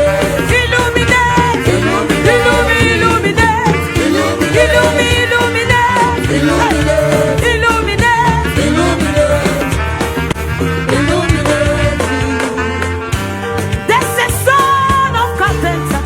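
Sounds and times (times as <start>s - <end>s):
gliding melodic vocals: 0.0s - 9.8s
bass and band accompaniment: 0.0s - 16.0s.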